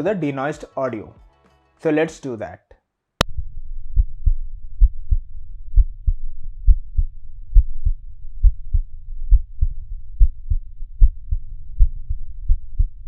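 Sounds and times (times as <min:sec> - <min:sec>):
heartbeat lub-dub thumps: 0:03.9 - 0:13.0.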